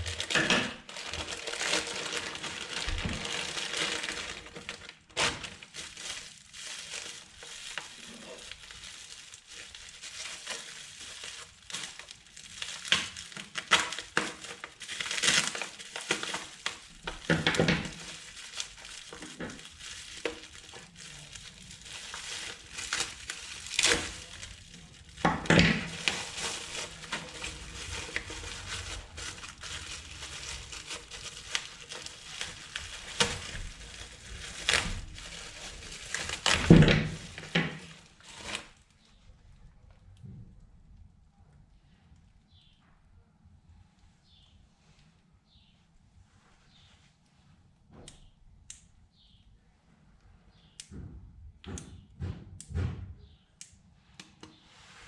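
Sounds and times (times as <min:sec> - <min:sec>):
plastic and paper crinkling: 0:00.0 - 0:40.0.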